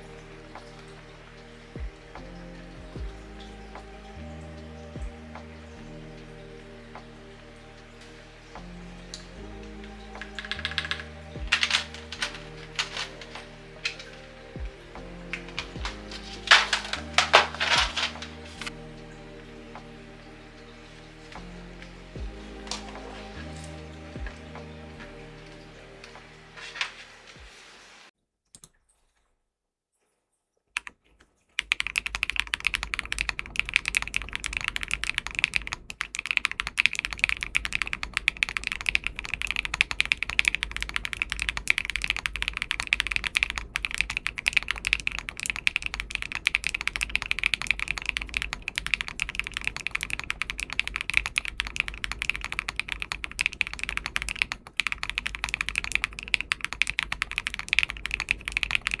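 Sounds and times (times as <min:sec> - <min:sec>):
mechanical keyboard typing: 0:10.2 - 0:14.2, 0:31.6 - 0:59.0.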